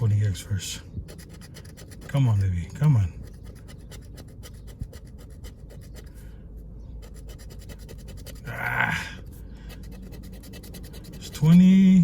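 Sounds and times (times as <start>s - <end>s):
lottery ticket being scratched: 1.0s - 6.1s, 7.0s - 8.6s, 9.7s - 12.0s.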